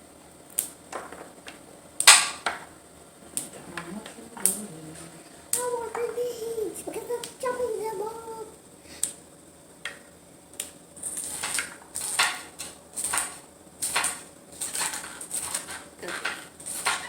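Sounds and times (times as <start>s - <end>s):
knife chopping green beans: 10.6s - 17.0s.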